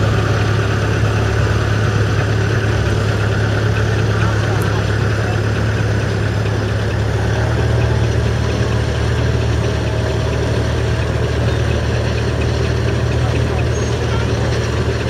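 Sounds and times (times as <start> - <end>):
steam roller engine running: 0.0 - 15.0.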